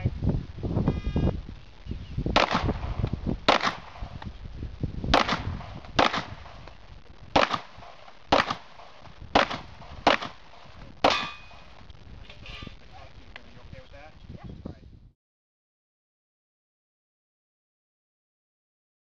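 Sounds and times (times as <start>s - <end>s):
pistol shots: 2.4s - 4.2s, 5.1s - 6.6s, 7.3s - 11.6s.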